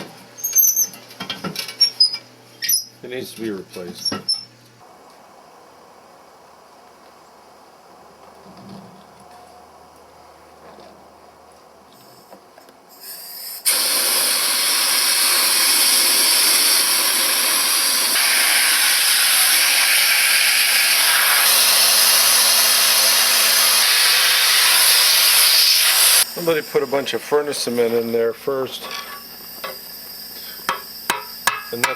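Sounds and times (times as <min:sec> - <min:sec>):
compressed air hissing: 0:12.9 - 0:28.1, 0:29.4 - 0:31.4.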